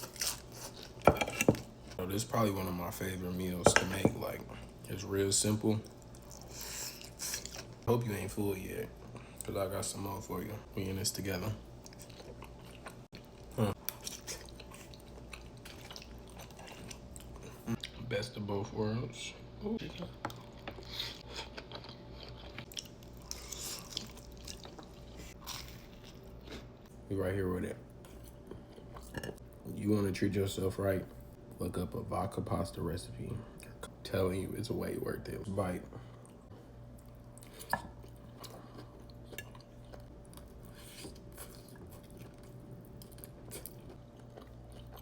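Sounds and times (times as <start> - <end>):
person chewing food: 11.8 - 18.0, 20.3 - 26.9, 36.2 - 45.0.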